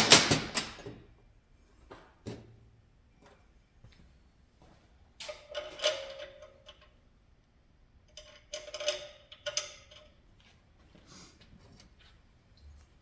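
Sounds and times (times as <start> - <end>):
metal parts clinking and clattering: 5.3 - 7.0, 8.1 - 10.2.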